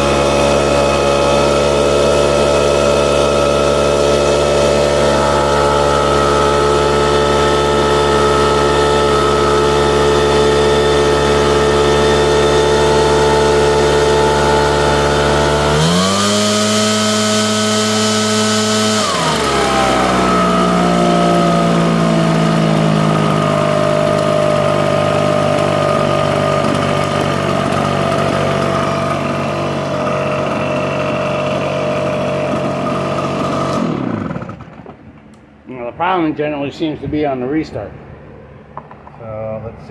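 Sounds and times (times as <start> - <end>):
leaf blower engine revving: 0.0 - 36.2.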